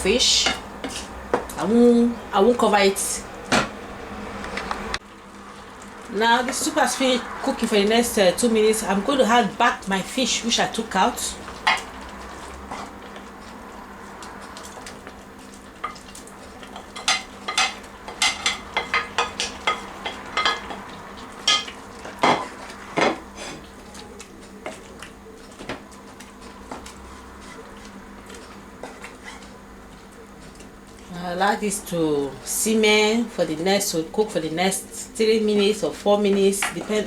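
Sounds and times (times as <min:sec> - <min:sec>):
utensil scraping a pot: 0:00.0 - 0:01.5, 0:26.3 - 0:29.6.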